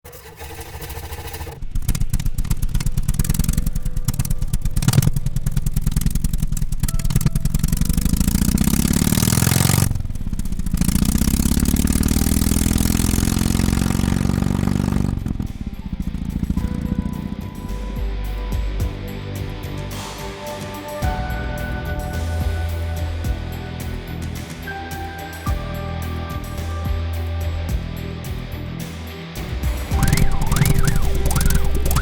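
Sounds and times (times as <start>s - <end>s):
synthesized motorcycle engine revving: 0.2s - 20.8s, 29.9s - 32.0s.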